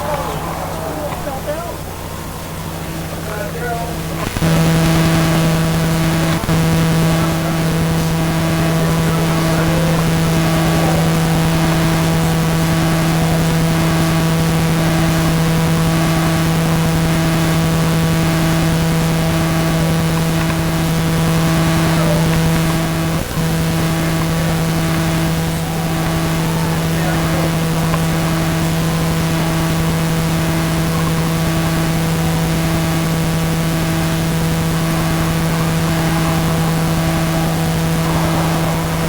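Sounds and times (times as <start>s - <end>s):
loud buzzing hum: 0.0s - 39.0s.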